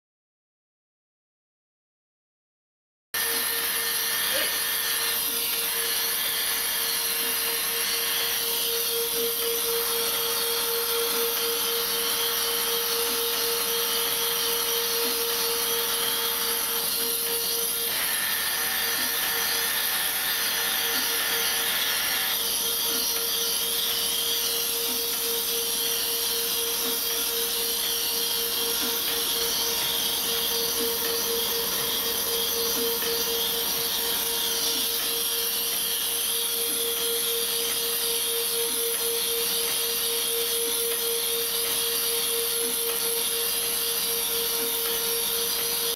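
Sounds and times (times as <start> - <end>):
faint high machine tones: 3.2 - 45.9
grinder machine humming: 3.2 - 45.9.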